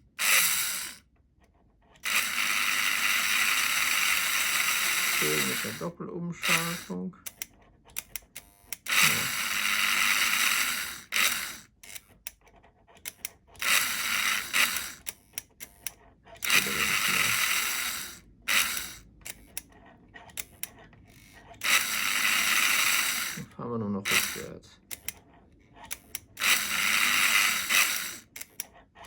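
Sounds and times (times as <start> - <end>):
model locomotive motor whirring: 0.0 - 1.1, 1.9 - 12.4, 13.0 - 28.8
reversing switch clicks: 24.1 - 25.2.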